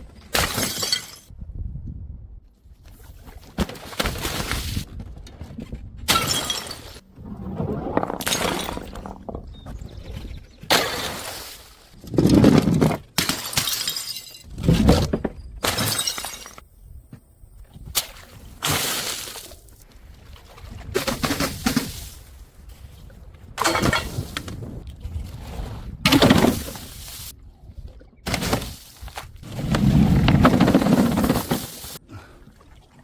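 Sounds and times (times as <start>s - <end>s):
glass bottles smashing: 0.4s - 1.3s, 6.1s - 7.0s, 13.2s - 14.5s, 15.6s - 16.6s.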